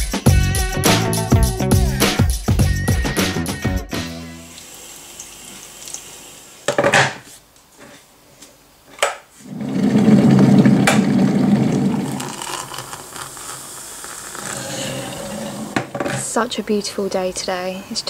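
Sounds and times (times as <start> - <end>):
coffee machine buzzing: 9.4 - 15.9.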